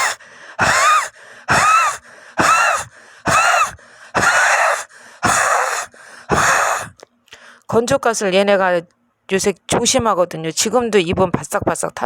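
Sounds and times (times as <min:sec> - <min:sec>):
woman wheezing breaths: 0:00.0 - 0:07.6.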